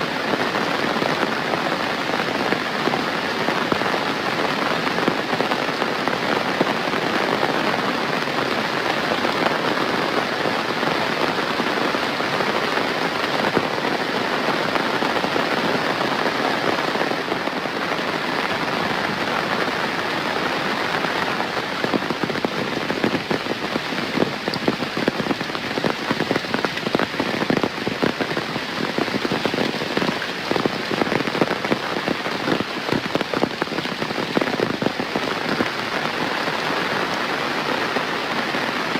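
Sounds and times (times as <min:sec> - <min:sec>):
heavy rain pattering: 0:00.0 - 0:38.9
individual raindrop hits: 0:21.4 - 0:36.4.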